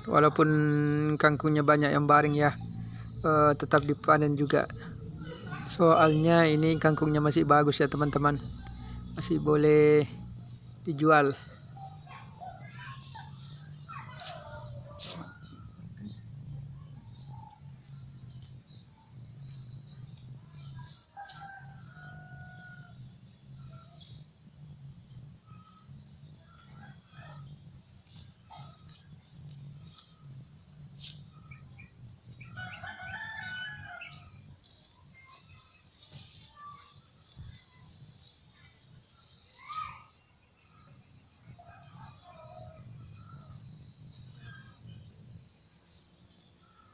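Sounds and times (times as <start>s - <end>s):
high insect buzz: 0.0s - 46.9s
rooster crowing: 1.2s - 10.2s, 21.2s - 23.0s, 32.4s - 34.4s.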